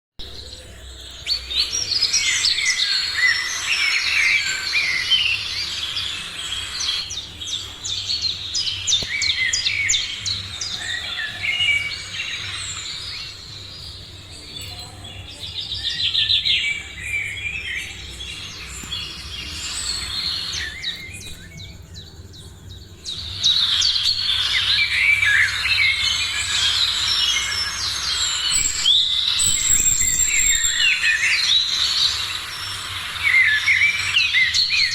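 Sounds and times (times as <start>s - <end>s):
birds chirping and calling: 0.2s - 34.9s.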